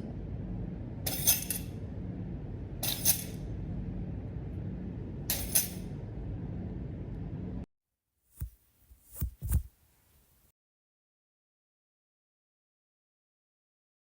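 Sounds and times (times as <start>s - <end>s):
steady low hum: 0.0s - 7.7s.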